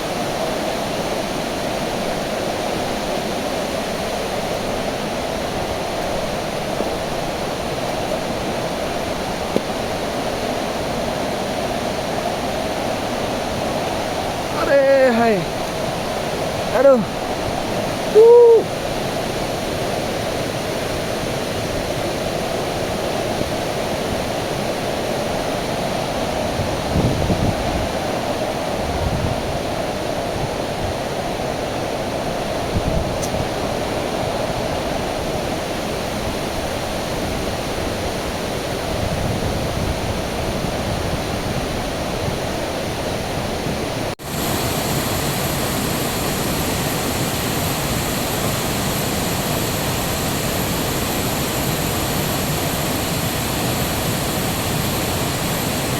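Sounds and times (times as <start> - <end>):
waterfall rushing: 14.2 - 17.2, 44.2 - 55.9
short hooting call: 18.1 - 18.7.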